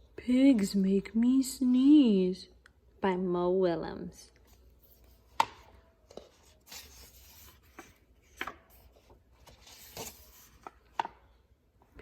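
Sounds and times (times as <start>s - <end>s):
book pages turning: 4.5s - 11.3s.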